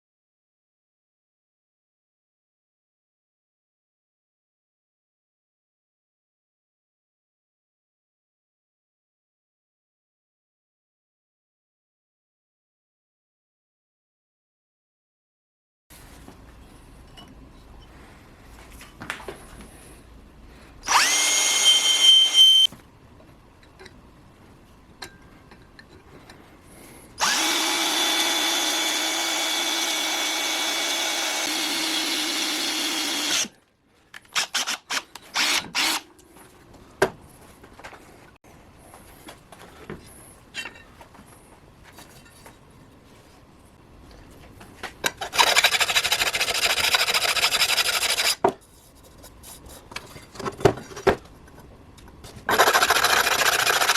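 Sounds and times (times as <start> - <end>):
electric drill whining: 20.8 - 22.7, 27.2 - 33.5, 34.4 - 36.0.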